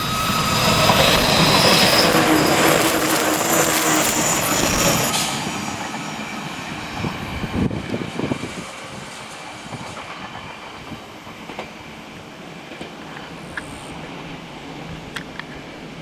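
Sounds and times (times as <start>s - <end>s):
high wheel squeals: 0.0s - 9.8s.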